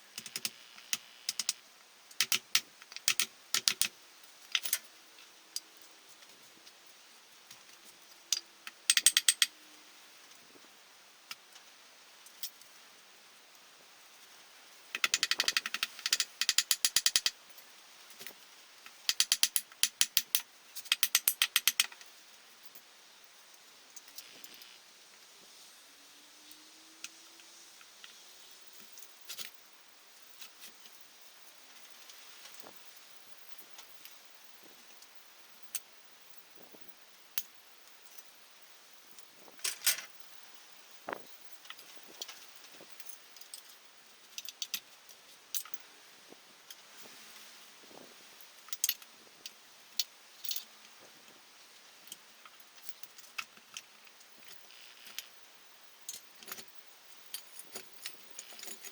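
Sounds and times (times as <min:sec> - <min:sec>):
faint steady hiss: 0:00.0 - 0:58.9
ratchet wrench clicking: 0:08.9 - 0:09.5, 0:15.0 - 0:17.3, 0:19.1 - 0:22.0
metal tools clinking: 0:57.3 - 0:58.9.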